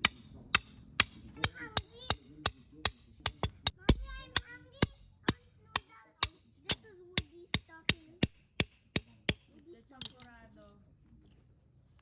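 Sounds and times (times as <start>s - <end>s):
sharp strikes: 0.0s - 5.1s.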